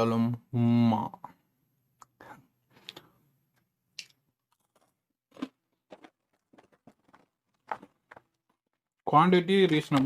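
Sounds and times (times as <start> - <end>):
chewing crunchy chips: 4.0 - 8.7.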